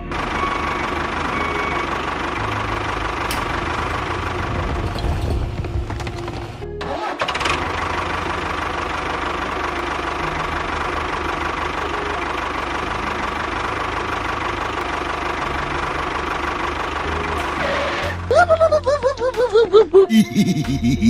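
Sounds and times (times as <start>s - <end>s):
small engine idling: 0.0s - 18.3s.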